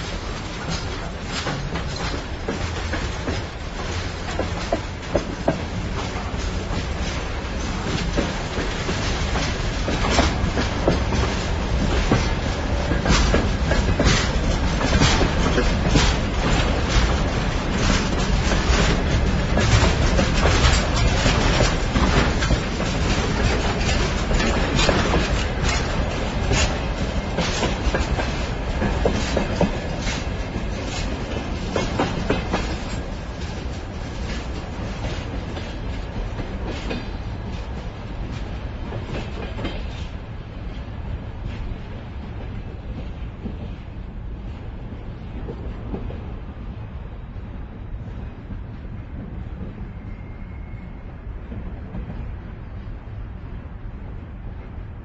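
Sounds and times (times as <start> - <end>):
wheels clacking over rail joints: 0.0 - 40.2
train rumbling: 0.0 - 55.0.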